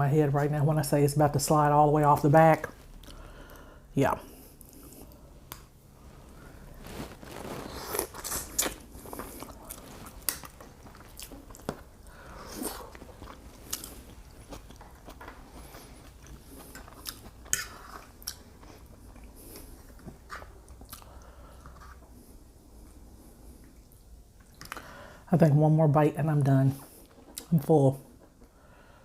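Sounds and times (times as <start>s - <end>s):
person chewing food: 6.3s - 25.0s, 26.8s - 28.6s.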